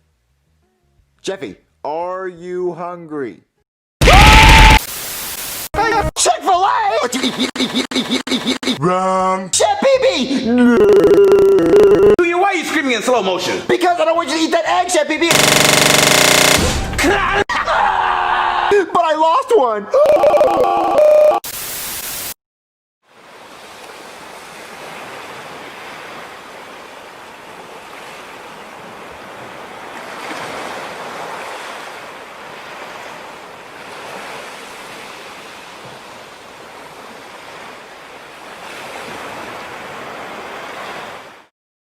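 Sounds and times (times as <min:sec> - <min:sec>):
loud burst of noise: 0:04.0 - 0:05.7, 0:15.3 - 0:17.0.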